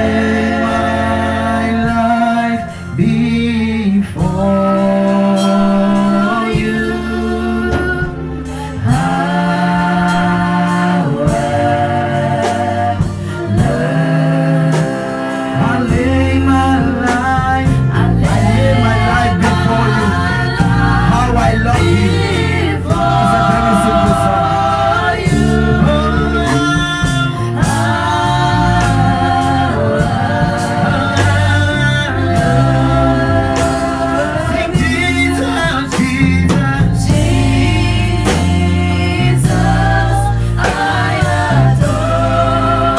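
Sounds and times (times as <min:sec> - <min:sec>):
band with bass and drums: 0:00.0 - 0:42.9
gospel singing: 0:00.0 - 0:42.9.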